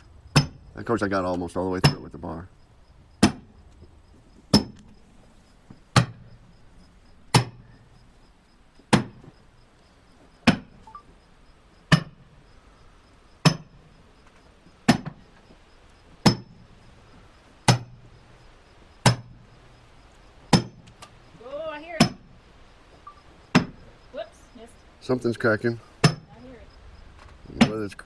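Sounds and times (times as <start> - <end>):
maul striking steel wedge: 0.3 - 0.6, 7.3 - 7.6, 13.4 - 13.7, 17.7 - 18.0, 20.5 - 20.8, 26.0 - 26.3.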